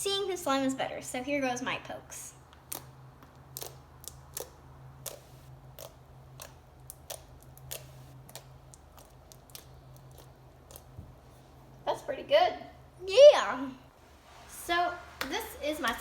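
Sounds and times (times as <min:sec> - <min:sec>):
slime squishing and popping: 0:02.6 - 0:11.0.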